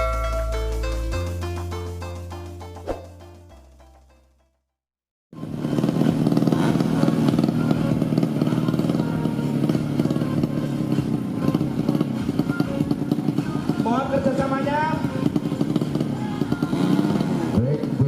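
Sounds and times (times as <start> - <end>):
motorcycle engines running loudly: 5.4 - 18.0.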